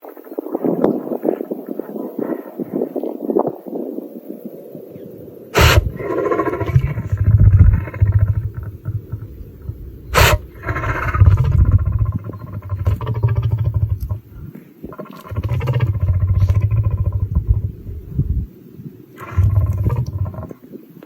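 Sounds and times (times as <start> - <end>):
lion sneezing: 5.6 - 9.4, 10.1 - 14.2, 15.0 - 17.4, 19.2 - 20.5
lion growls and grunts: 5.6 - 18.3, 19.2 - 20.6.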